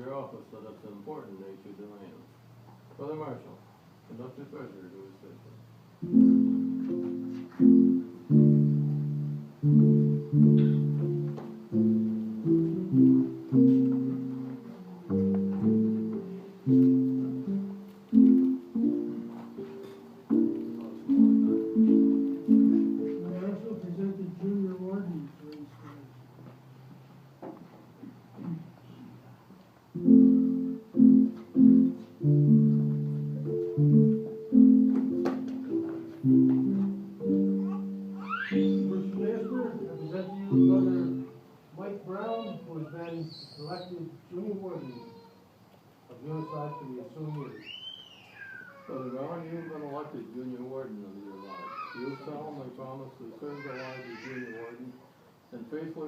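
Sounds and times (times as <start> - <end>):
slow instrumental chords: 6.0 - 24.2, 29.9 - 41.7.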